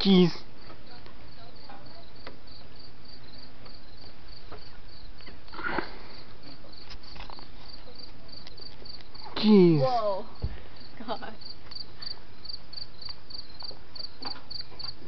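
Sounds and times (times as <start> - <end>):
constant hiss: 0.0 - 15.0
crickets chirping: 0.0 - 15.0.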